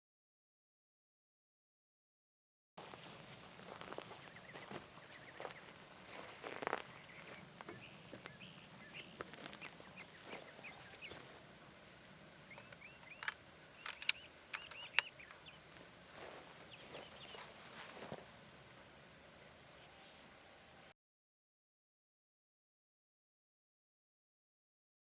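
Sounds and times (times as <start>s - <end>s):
birds chirping: 2.9s - 20.9s
sharp clicks: 12.5s - 15.6s.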